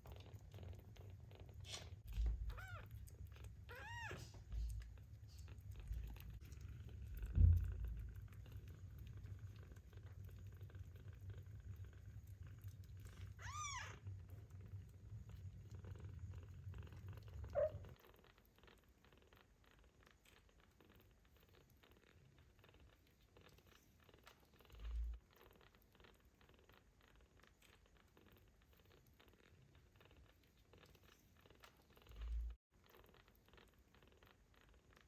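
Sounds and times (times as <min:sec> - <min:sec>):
kittens purring: 0:00.0 - 0:35.0
soft low thump: 0:07.2 - 0:08.1
kitten mewing: 0:17.5 - 0:18.0.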